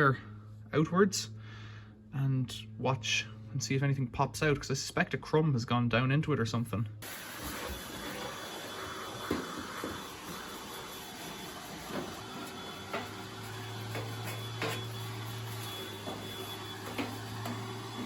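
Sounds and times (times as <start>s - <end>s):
distant leaf blower droning: 7.0s - 18.0s.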